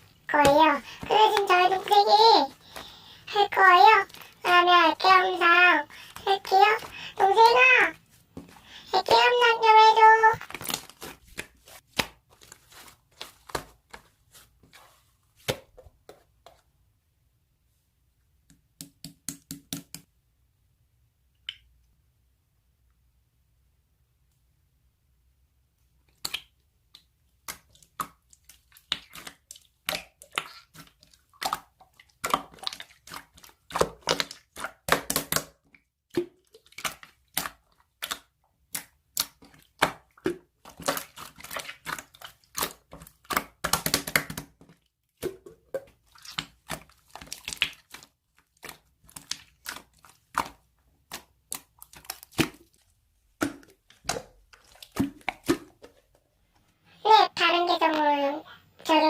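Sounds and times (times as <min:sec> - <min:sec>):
slime squishing: 0:00.0 - 0:16.6, 0:26.0 - 0:56.4.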